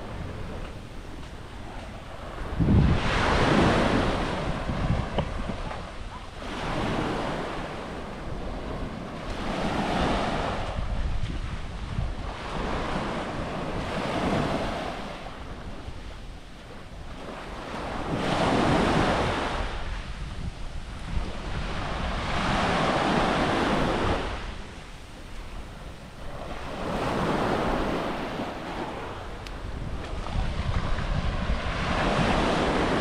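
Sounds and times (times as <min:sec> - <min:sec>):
small waves washing on sand: 0:00.0 - 0:33.0
wind rumbling on microphone: 0:00.0 - 0:33.0.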